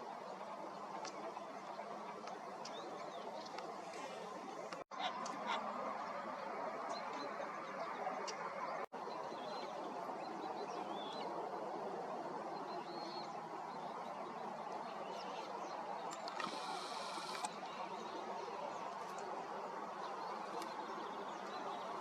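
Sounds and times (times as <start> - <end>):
steady background hiss: 9.1 - 22.0.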